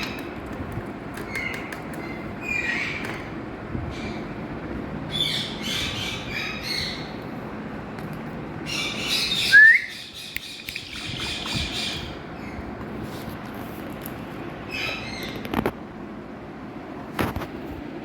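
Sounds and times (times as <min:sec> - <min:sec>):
parakeet squawking: 0:01.3 - 0:03.3, 0:05.1 - 0:07.1, 0:08.7 - 0:12.6.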